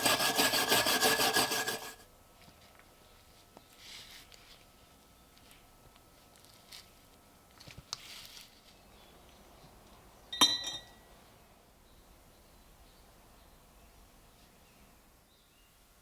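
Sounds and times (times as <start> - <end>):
soft scrapes and rustles: 2.4 - 9.0
metal object clinking: 10.4 - 11.0.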